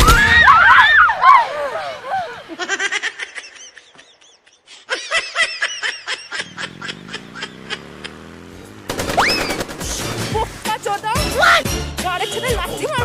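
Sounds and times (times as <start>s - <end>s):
horn imitating machine-gun fire: 8.0s - 10.6s.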